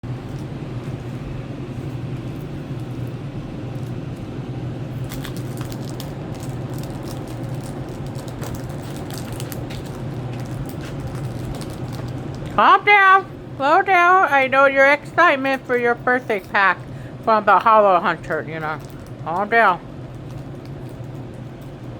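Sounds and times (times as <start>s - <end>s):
crackles and clicks: 0.0s - 12.6s, 18.2s - 21.9s
low room hum: 0.0s - 21.9s
packaging rustling and crinkling: 0.1s - 12.6s, 18.7s - 21.9s.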